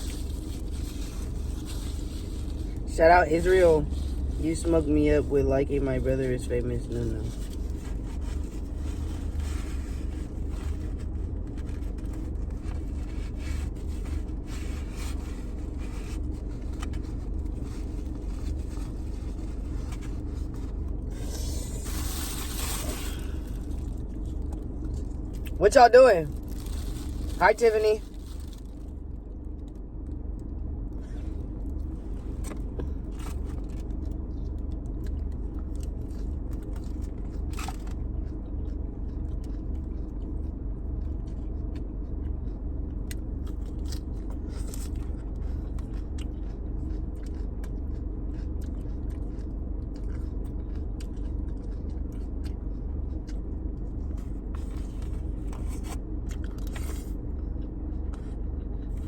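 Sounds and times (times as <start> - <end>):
steady low hum: 0.0 - 59.0
chewing: 6.8 - 25.6, 26.3 - 27.4, 31.0 - 59.0
utensil scraping on container: 21.2 - 23.8.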